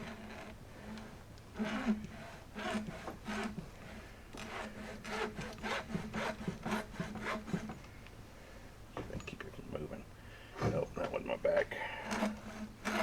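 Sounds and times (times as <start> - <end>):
hacksaw cutting rubber hose: 0.0 - 7.8, 12.0 - 13.0.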